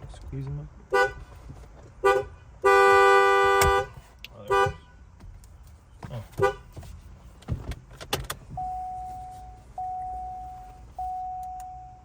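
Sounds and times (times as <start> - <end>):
car electronic warning chime: 8.5 - 12.0.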